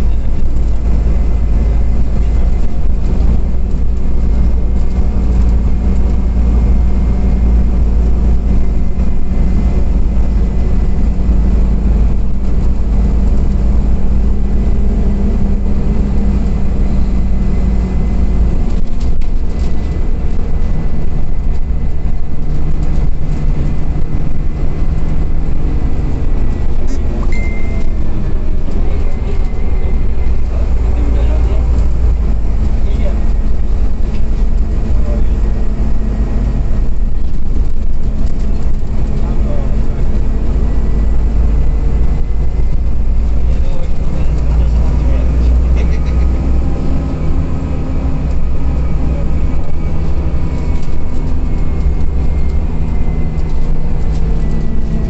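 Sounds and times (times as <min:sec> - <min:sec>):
bus engine rumbling: 0:00.0 - 0:55.0
short high beep: 0:27.3 - 0:28.0.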